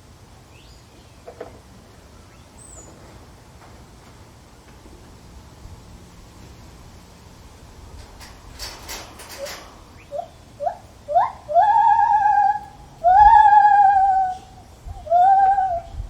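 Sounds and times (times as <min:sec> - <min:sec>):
rustle: 0:00.0 - 0:16.0
gibbon calling: 0:09.4 - 0:16.0.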